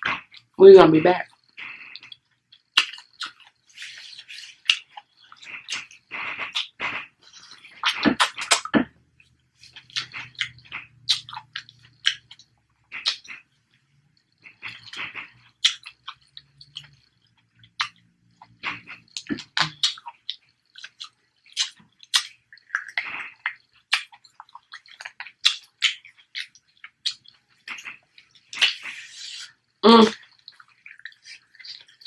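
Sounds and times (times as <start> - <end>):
chewing and wet mouth smacks: 1.2 - 13.5, 14.2 - 32.0.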